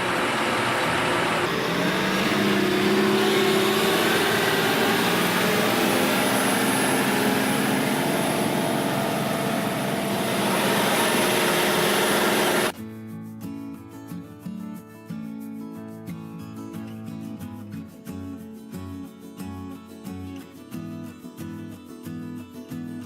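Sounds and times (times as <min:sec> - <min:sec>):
diesel engine running under load: 0:00.0 - 0:12.7.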